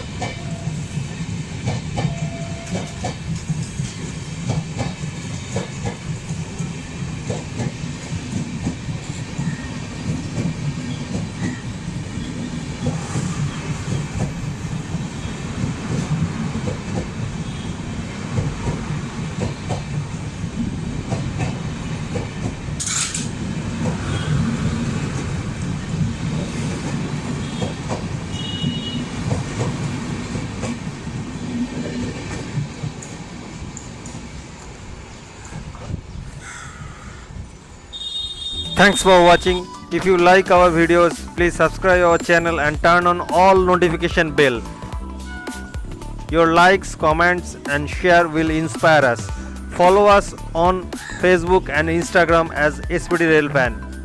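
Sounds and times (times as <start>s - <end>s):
wheels clicking over rail joints: 0.0s - 34.8s
train rumbling past: 0.0s - 54.0s.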